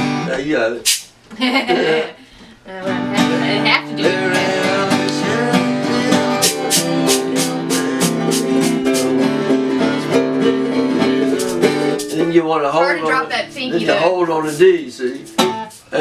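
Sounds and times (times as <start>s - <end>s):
acoustic guitar strumming: 0.0s - 1.0s, 2.7s - 16.0s.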